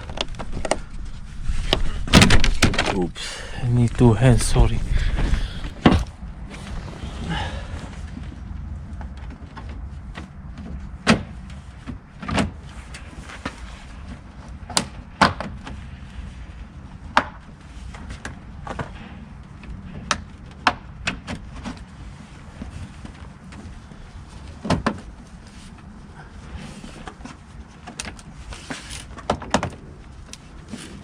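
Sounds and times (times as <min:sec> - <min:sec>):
low rumble: 0:00.0 - 0:10.2.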